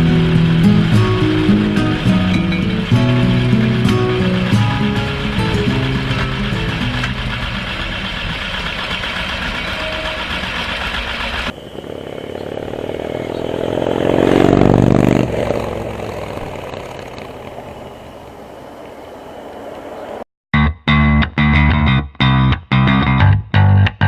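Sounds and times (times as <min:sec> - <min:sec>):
motorcycle engine revving: 0:00.0 - 0:18.7.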